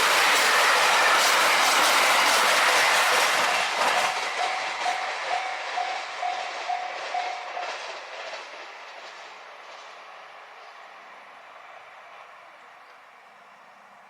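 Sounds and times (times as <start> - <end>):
train wheels clattering: 0.0 - 10.8
crossing warning bell ringing: 3.4 - 7.8.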